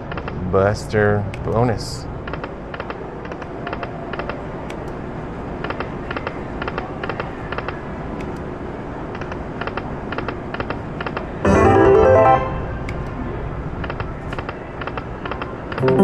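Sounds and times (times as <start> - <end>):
slot machine musical jingle: 11.4 - 12.9, 15.8 - 16.0
casino din: 11.5 - 12.8, 15.8 - 16.0
slot machine reels clicking: 15.8 - 16.0.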